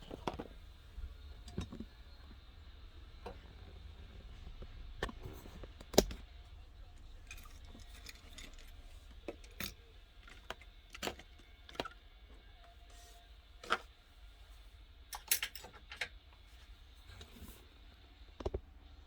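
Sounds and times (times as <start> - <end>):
low steady hum: 0.0 - 19.0
clicks and clatter of handling: 7.2 - 12.0, 15.1 - 16.2.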